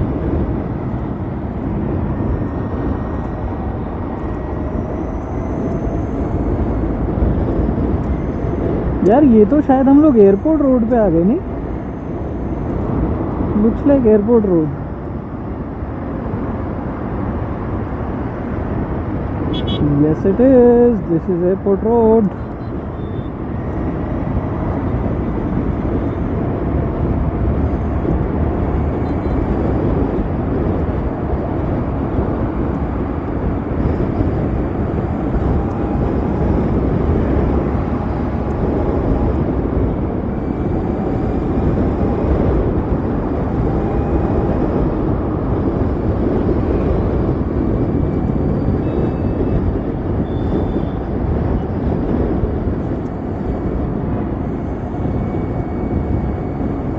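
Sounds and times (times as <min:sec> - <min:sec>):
wind and road noise: 0:00.0 - 0:56.9.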